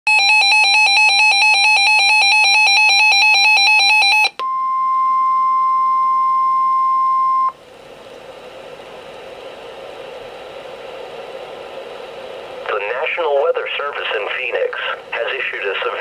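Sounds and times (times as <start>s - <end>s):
electronic alarm beeping: 0.1s - 7.6s
radio static hiss: 8.6s - 16.0s.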